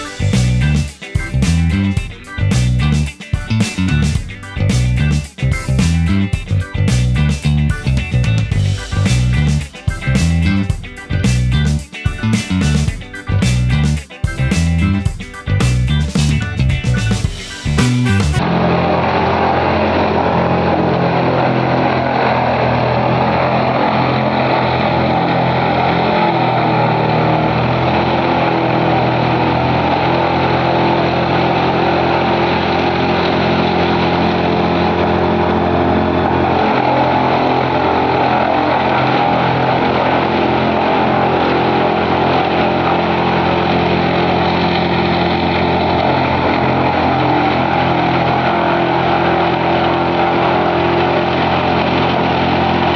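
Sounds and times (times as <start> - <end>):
wood chipper running: 15.9 - 52.9.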